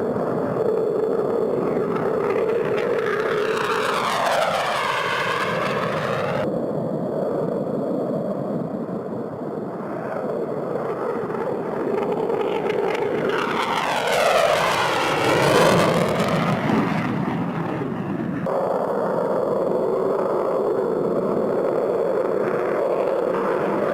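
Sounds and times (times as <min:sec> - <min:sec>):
fighter jet engines roaring: 0:00.0 - 0:23.9.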